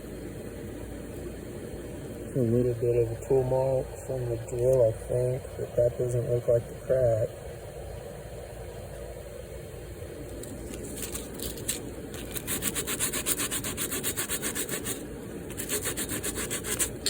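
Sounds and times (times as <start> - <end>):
sandpaper rasping on metal: 11.0 - 17.0.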